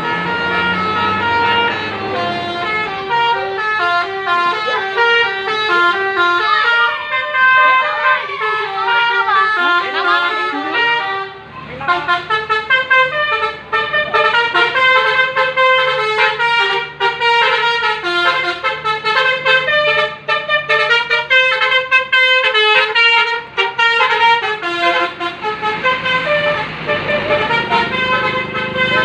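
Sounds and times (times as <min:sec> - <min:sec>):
bus musical horn playing tune: 0:00.0 - 0:29.0.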